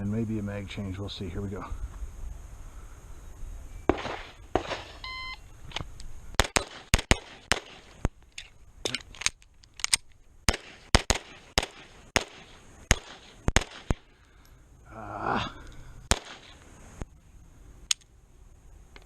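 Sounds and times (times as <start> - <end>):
pistol shots: 3.9 - 5.0, 6.4 - 8.1, 10.5 - 14.1, 16.1 - 16.6
shot timer beep: 5.0 - 5.4.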